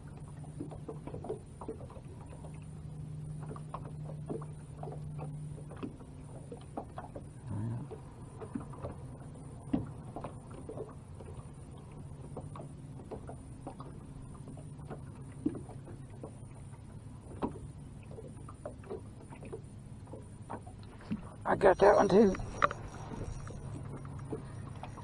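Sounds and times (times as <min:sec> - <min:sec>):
low steady hum: 0:00.0 - 0:25.0
fishing gear clicks and taps: 0:21.8 - 0:24.9.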